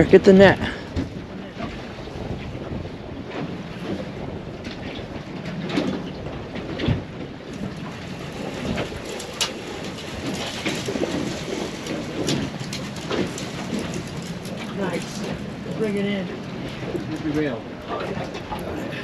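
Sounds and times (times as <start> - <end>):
fish thrashing in water: 7.0 - 17.1.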